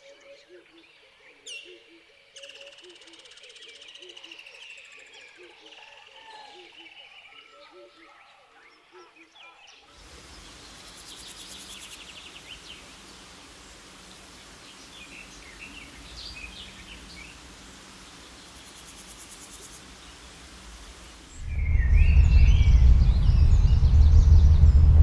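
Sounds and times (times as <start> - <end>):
small birds chirping: 9.9 - 25.0
high insect-like trill: 10.7 - 21.4
loud low rumble: 21.3 - 25.0.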